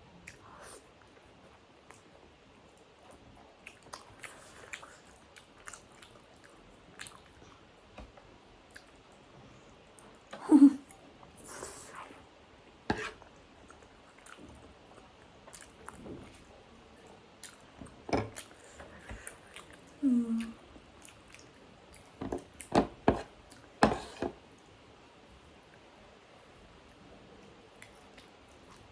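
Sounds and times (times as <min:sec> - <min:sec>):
chewing and mouth smacks: 0:02.7 - 0:07.7, 0:08.7 - 0:09.1, 0:13.3 - 0:22.8, 0:27.4 - 0:28.9.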